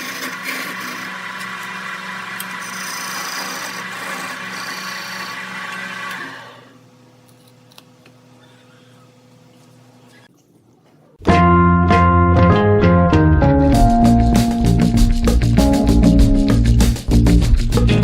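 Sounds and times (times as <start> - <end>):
tool cutting spinning wood: 0.0 - 6.8
wood lathe motor hum: 0.0 - 6.8.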